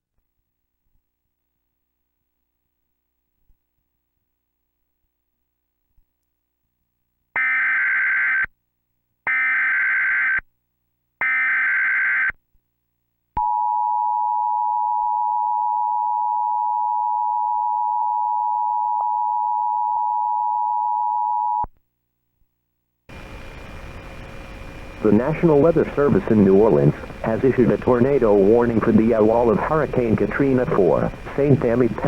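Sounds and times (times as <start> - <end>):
steady attention tone: 23.1 - 32.0
warbling data-tone bursts: 23.1 - 32.0.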